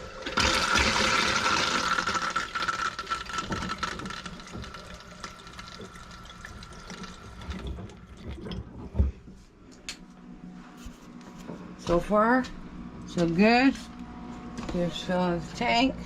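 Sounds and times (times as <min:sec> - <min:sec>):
water rushing from plumbing: 0:00.0 - 0:09.2.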